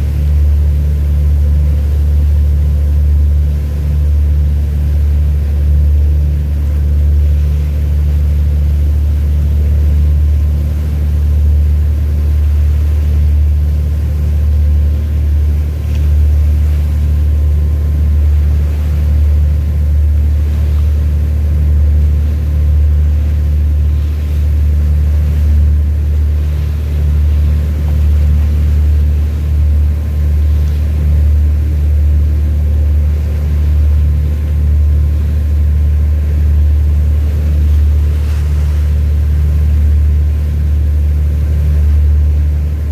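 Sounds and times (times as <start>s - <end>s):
machinery hum: 0.0s - 42.9s
ship engine drone: 0.0s - 42.9s.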